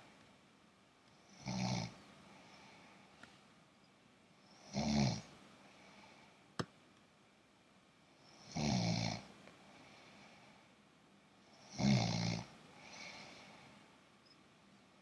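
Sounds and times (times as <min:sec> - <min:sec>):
man snoring: 0:01.3 - 0:02.0, 0:04.6 - 0:05.3, 0:08.4 - 0:09.3, 0:11.6 - 0:13.3.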